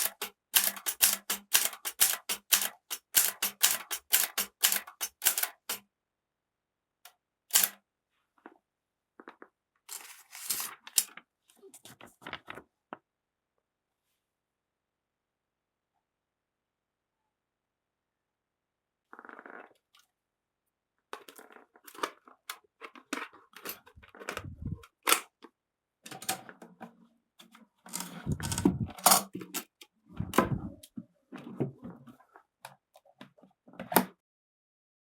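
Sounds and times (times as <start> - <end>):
typewriter clicks and clunks: 0.0 - 5.8, 7.5 - 7.8, 27.9 - 29.6.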